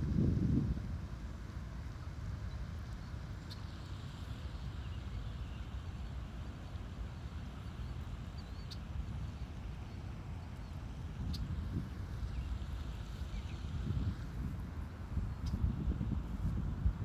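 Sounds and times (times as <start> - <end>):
wind rumble on microphone: 0.0 - 3.2, 8.0 - 17.0.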